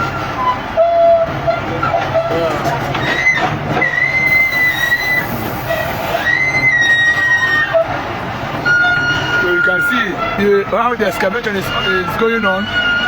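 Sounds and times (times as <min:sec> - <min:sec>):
excavator engine running: 0:00.0 - 0:08.6
high-pitched squeal: 0:03.0 - 0:07.8.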